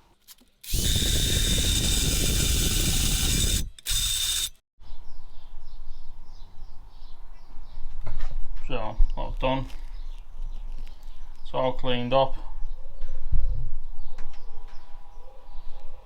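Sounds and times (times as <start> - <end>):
drill grinding metal with whine: 0.6 - 4.6.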